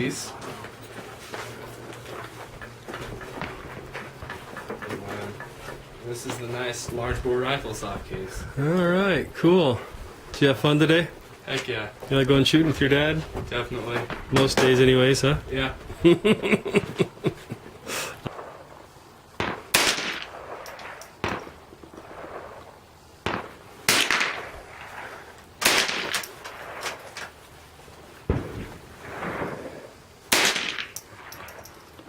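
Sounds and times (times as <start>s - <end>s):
gunshots with echo: 19.4s - 21.6s, 23.2s - 27.0s, 28.3s - 31.4s.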